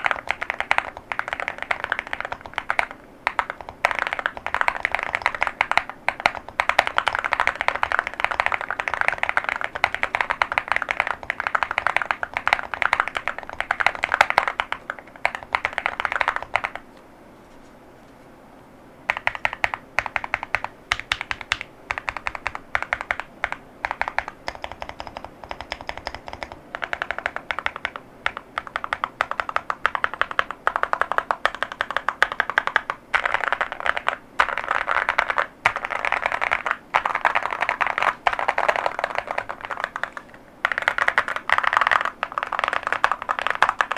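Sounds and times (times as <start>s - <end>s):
mechanical keyboard typing: 0.0s - 16.8s, 19.1s - 43.9s.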